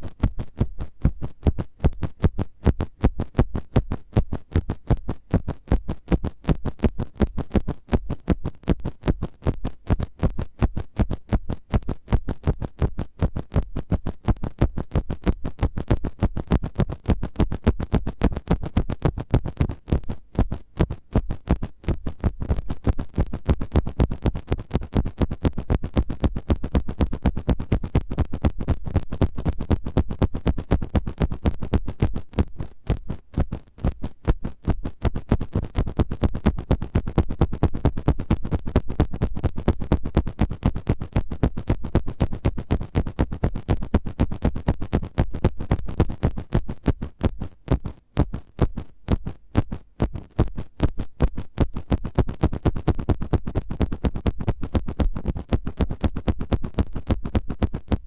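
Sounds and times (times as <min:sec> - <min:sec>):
scratching on microphone: 0:00.0 - 0:58.0.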